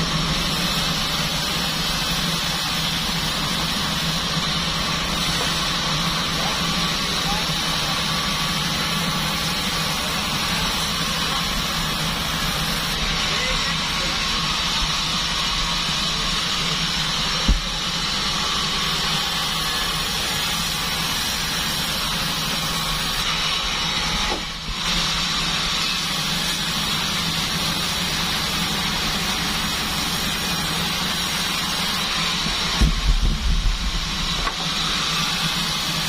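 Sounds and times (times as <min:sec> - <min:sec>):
band sawmill running: 0:00.0 - 0:36.0
heavy thumps: 0:17.4 - 0:17.9.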